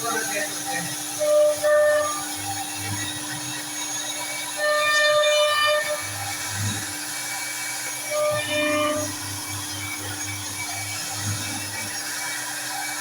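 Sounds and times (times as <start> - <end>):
router machine whining: 0.0 - 13.0.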